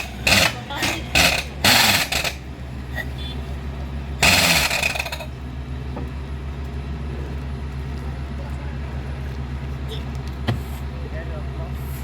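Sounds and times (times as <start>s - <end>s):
loud bursts of noise: 0.0s - 2.6s, 4.1s - 5.3s
drilling rig humming: 0.0s - 6.6s.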